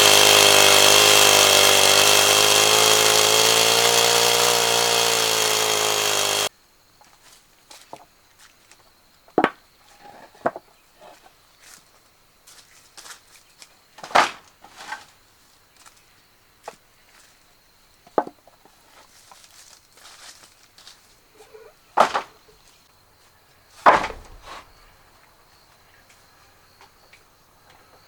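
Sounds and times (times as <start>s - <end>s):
chopping wood strikes: 0.0s - 6.5s, 23.8s - 24.6s.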